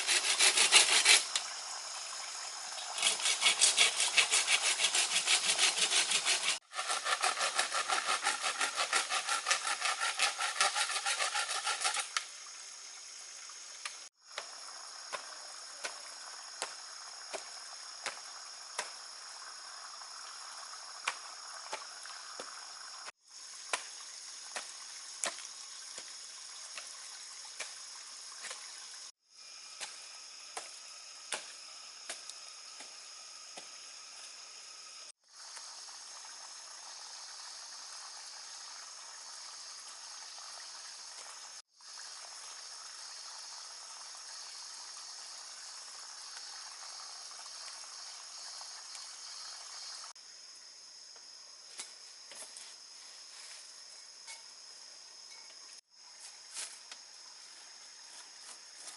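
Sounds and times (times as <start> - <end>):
insect chorus: 0.0 - 58.9
trickling water: 0.8 - 4.8, 15.2 - 29.1, 35.3 - 50.1.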